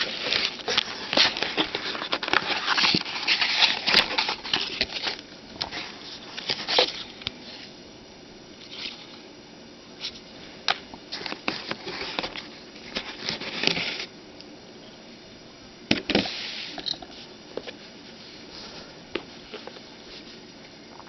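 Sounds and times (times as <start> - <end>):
packaging rustling: 0.0 - 7.2.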